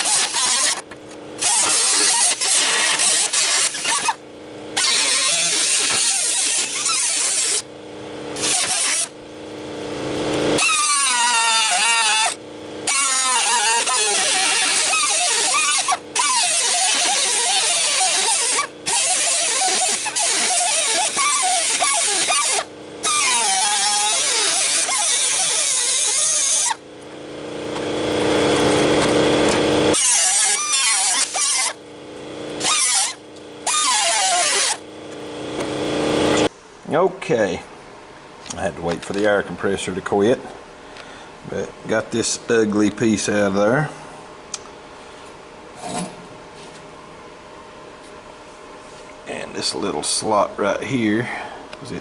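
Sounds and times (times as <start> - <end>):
air cut-off tool cutting metal: 0.0 - 0.8, 1.4 - 4.2, 4.8 - 7.7, 8.4 - 9.2, 10.6 - 26.8, 29.5 - 31.8, 32.6 - 34.8, 35.8 - 36.5.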